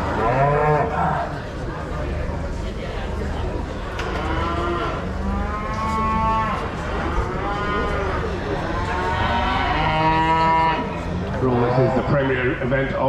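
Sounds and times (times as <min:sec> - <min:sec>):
cattle mooing: 0:00.0 - 0:01.3, 0:04.0 - 0:12.6
steady low hum: 0:00.0 - 0:13.0.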